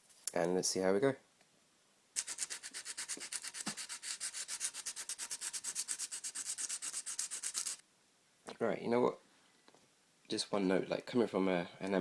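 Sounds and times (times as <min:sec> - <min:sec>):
sandpaper rubbing on metal rim: 0:02.2 - 0:07.8.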